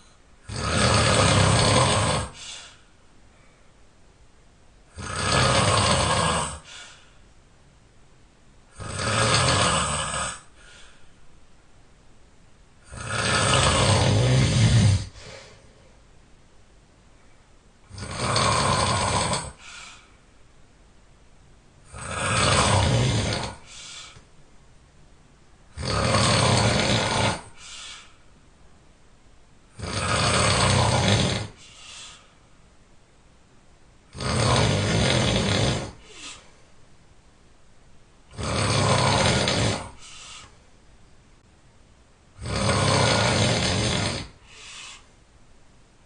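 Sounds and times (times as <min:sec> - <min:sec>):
person snoring loudly: 0:00.4 - 0:02.8, 0:04.9 - 0:06.8, 0:08.7 - 0:10.6, 0:12.8 - 0:15.4, 0:17.9 - 0:19.8, 0:21.9 - 0:24.2, 0:25.7 - 0:27.6, 0:29.7 - 0:32.0, 0:34.1 - 0:36.4, 0:38.3 - 0:40.5, 0:42.4 - 0:44.8
short faint breath: 0:31.6 - 0:32.5, 0:44.4 - 0:45.2.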